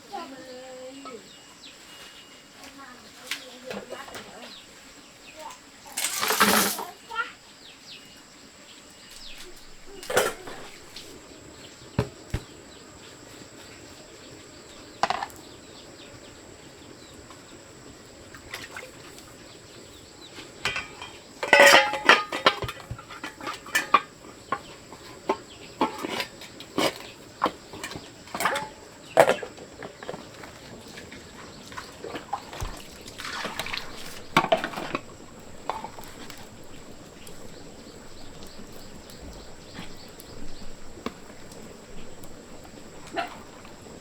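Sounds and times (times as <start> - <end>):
sharp knocks and clattering: 20.4 - 43.9.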